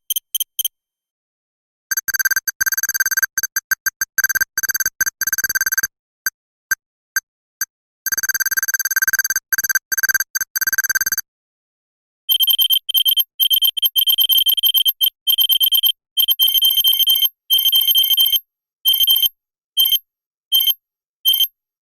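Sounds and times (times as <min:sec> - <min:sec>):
rapid electronic beeps: 0:12.3 - 0:18.3.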